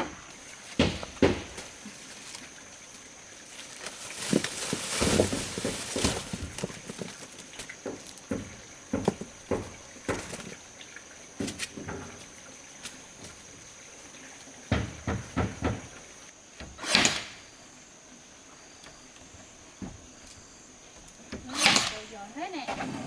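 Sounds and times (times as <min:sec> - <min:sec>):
knocks of things being handled: 0:00.0 - 0:01.7, 0:04.2 - 0:10.6, 0:14.7 - 0:16.0.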